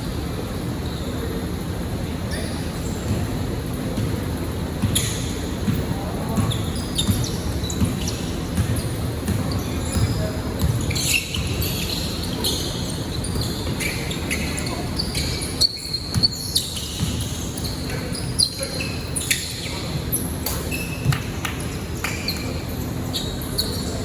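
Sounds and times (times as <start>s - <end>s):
sneaker squeaks on court: 2.3s - 24.0s
basketball bouncing: 4.8s - 11.6s, 16.1s - 17.4s.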